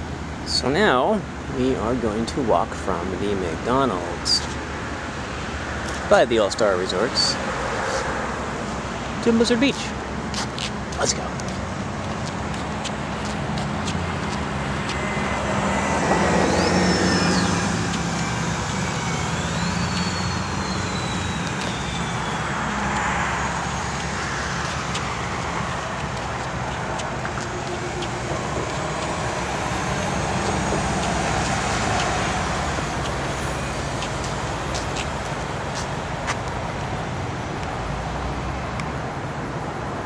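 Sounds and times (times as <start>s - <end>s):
cars passing: 0.0s - 40.0s
high whine falling in pitch: 10.9s - 36.8s.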